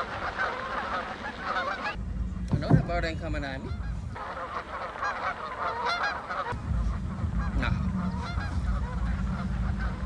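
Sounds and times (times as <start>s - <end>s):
geese honking: 0.0s - 10.0s
low rumble: 2.0s - 4.4s, 6.5s - 10.0s.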